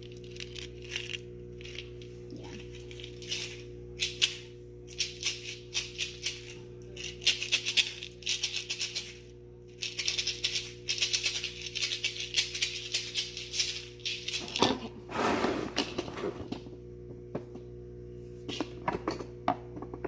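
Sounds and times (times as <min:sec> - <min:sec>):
steady low hum: 0:00.0 - 0:20.0
maraca rattling: 0:02.7 - 0:14.6.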